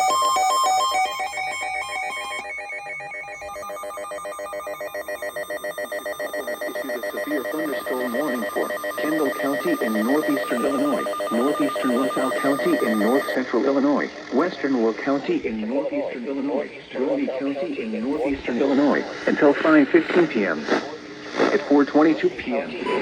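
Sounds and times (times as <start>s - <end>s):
electronic ringing tone: 0.0s - 13.4s
person speaking: 6.2s - 13.4s.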